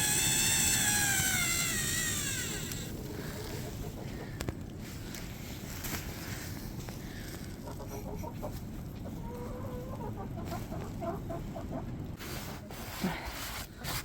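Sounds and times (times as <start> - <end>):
steady low rumble: 0.1 - 12.2
chickens clucking: 3.0 - 4.7, 7.3 - 12.0.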